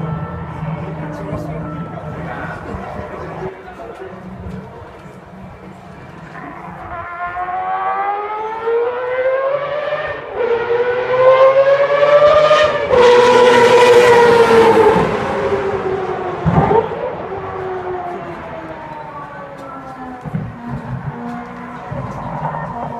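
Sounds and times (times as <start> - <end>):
rotary race car engine passing: 6.2 - 22.9.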